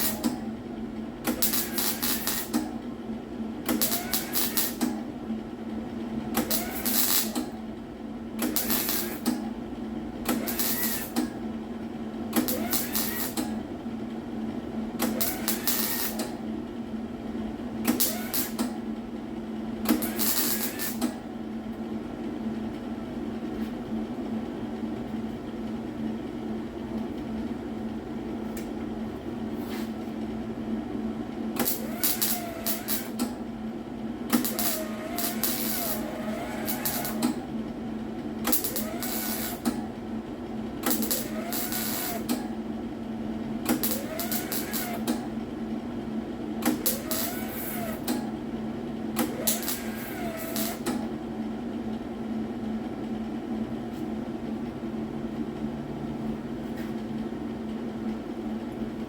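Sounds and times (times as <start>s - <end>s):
welder crackling: 0.0s - 0.4s, 1.2s - 2.7s, 3.7s - 4.9s, 6.4s - 7.4s, 8.4s - 9.4s, 10.3s - 11.3s, 12.4s - 13.5s, 15.0s - 16.3s, 17.9s - 18.7s, 19.9s - 21.1s, 31.6s - 33.3s, 34.3s - 37.4s, 38.5s - 39.8s, 40.8s - 42.4s, 43.7s - 45.2s, 46.6s - 48.1s, 49.2s - 50.9s
steady low hum: 0.0s - 59.0s.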